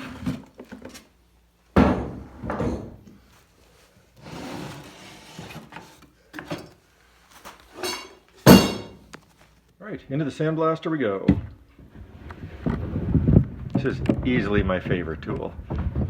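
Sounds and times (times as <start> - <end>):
hardware scraping and knocking: 7.7 - 9.1
loud metal clank with ringing: 7.8 - 9.0.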